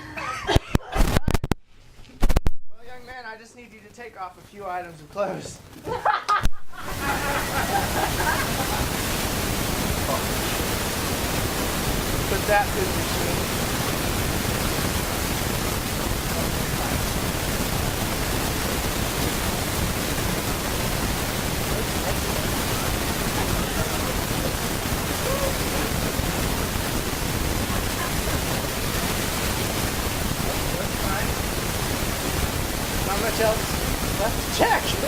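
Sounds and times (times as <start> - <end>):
loud recording hiss: 0.0 - 35.0
faint voices: 21.4 - 29.3.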